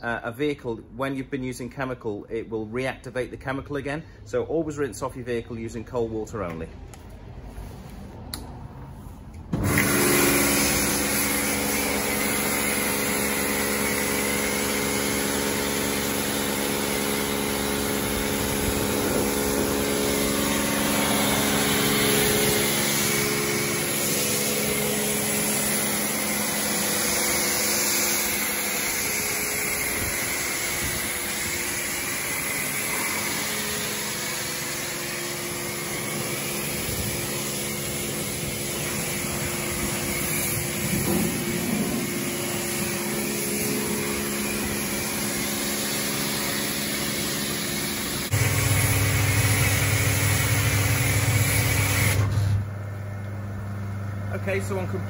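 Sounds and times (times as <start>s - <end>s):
pressure washer motor humming: 9.5s - 55.0s
high-pressure spray hissing: 9.7s - 52.3s.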